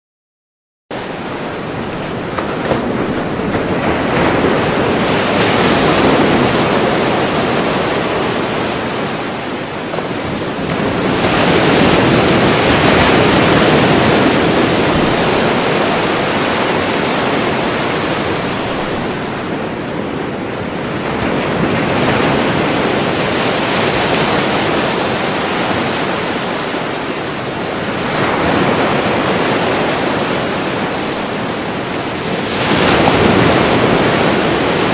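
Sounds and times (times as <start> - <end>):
ocean waves breaking: 0.9 - 34.9.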